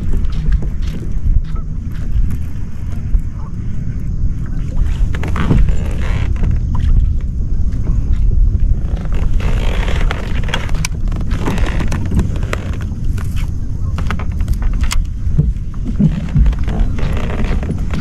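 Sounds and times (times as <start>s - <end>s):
wind buffeting microphone: 0.0s - 18.0s
sharp clicks and knocks: 9.1s - 18.0s.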